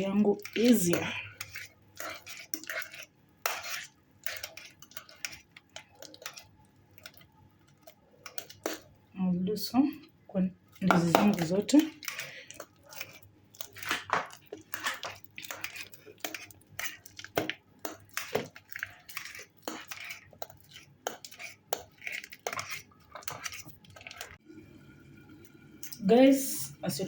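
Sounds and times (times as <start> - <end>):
fork clinking and scraping a dish: 10.9 - 24.4.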